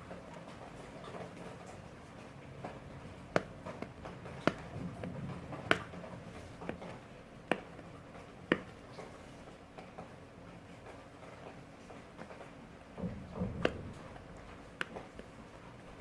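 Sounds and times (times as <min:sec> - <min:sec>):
clicks and taps on a box: 0:03.3 - 0:06.0, 0:07.5 - 0:07.9, 0:08.5 - 0:08.8, 0:14.8 - 0:15.3.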